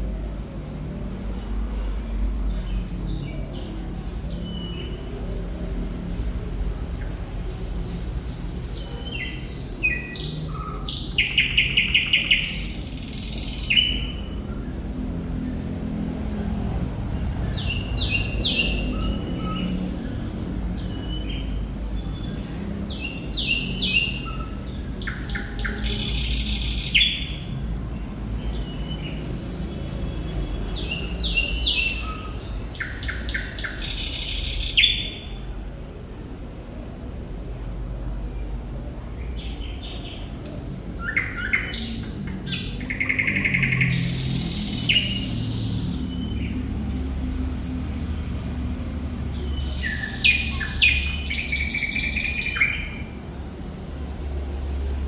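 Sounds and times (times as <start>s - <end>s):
nightingale singing: 6.3s - 14.9s, 17.4s - 27.6s, 28.4s - 46.9s, 48.2s - 53.2s
harsh rasping bird calls: 23.2s - 27.5s.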